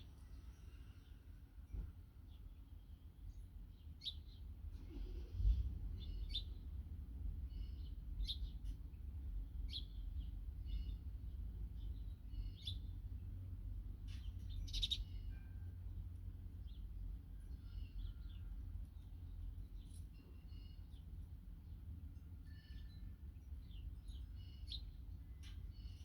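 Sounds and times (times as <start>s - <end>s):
small birds chirping: 5.9s - 6.8s, 7.4s - 13.4s, 14.0s - 15.4s, 16.6s - 21.9s, 22.5s - 26.0s.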